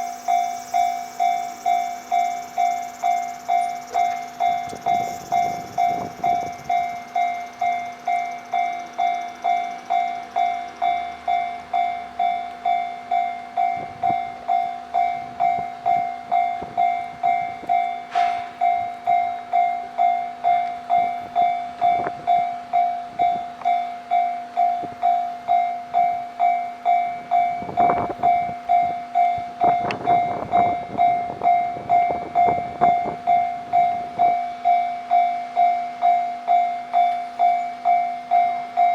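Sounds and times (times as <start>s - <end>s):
train wheels clacking: 0.0s - 23.8s
level-crossing alarm bell: 0.0s - 38.9s.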